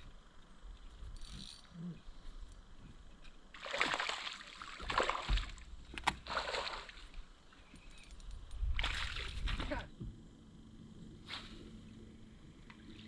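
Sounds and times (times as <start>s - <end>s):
water splashing: 3.5s - 7.2s.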